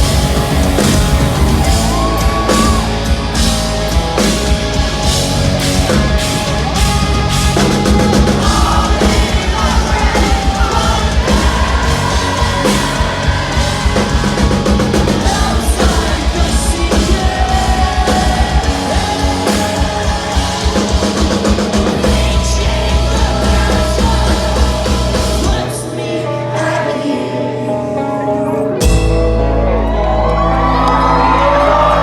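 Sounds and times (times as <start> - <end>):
held bass note: 0.0 - 25.4
fast drumming: 0.0 - 25.6
distorted guitars: 0.0 - 32.0
person singing: 6.8 - 29.1.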